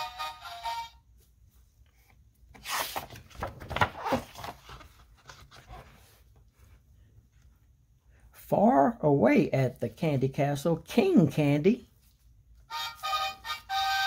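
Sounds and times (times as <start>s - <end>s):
paper page rustling: 1.5s - 6.8s.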